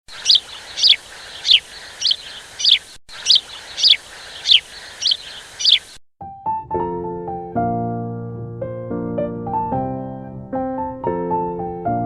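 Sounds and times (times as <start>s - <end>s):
bird chirping: 0.1s - 6.0s
steady background hiss: 0.1s - 6.0s.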